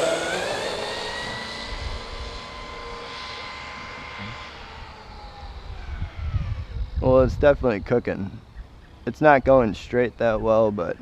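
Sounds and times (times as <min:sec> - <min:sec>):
low rumble: 0:00.0 - 0:08.8
electric motor whining: 0:00.0 - 0:09.6.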